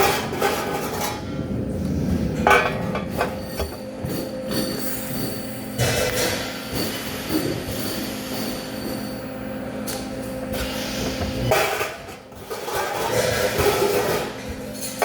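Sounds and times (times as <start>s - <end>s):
machinery rumbling and screeching: 0.0s - 9.5s
electrical hum: 0.0s - 15.0s.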